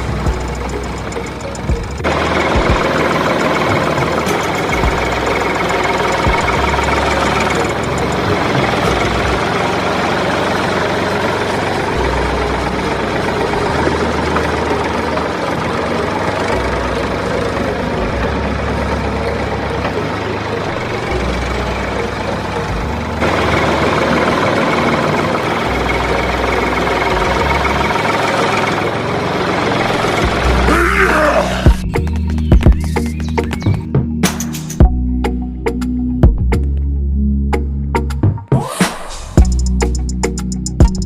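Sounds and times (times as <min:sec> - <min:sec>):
engine idling: 0:00.0 - 0:36.7, 0:39.1 - 0:41.0.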